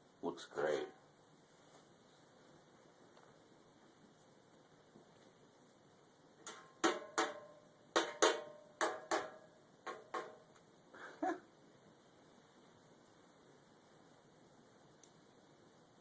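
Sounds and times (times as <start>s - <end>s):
sharp ringing knocks: 6.4s - 10.5s.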